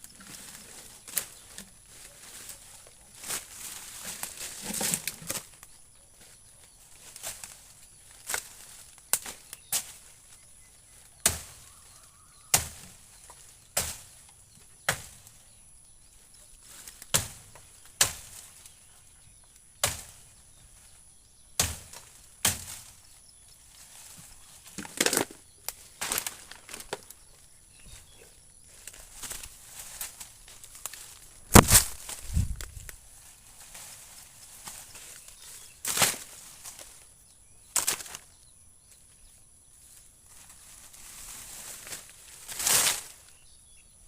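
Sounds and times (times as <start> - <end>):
blade chopping wood: 31.5 - 32.1.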